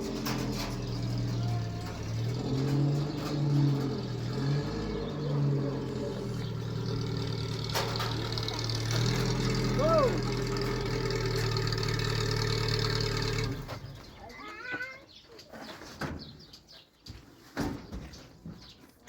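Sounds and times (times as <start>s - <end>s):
engine running steadily: 0.0s - 14.0s.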